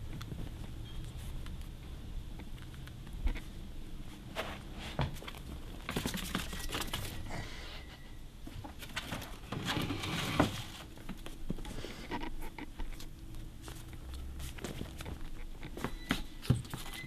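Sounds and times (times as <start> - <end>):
ferret scrabbling and rustling: 2.6 - 7.4, 8.4 - 17.0.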